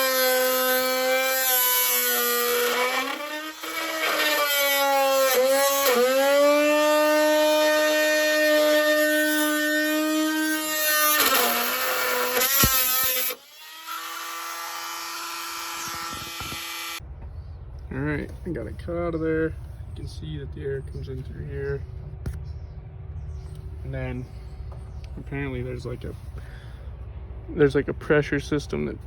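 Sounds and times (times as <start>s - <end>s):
power tool cutting metal panel: 0.0s - 17.0s.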